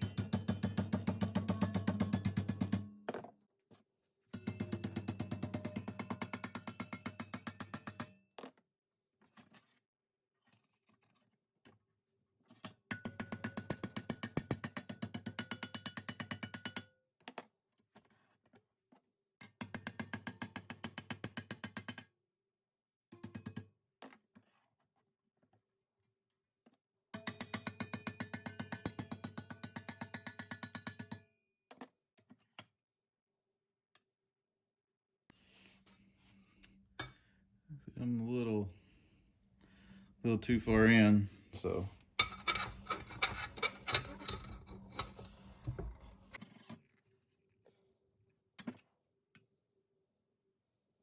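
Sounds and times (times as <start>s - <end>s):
hammer striking metal: 0.0s - 2.8s.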